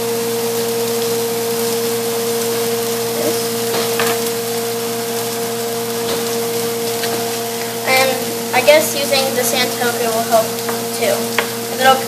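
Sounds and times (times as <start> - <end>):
machine hum: 0.0 - 12.0
even hiss: 2.5 - 12.0.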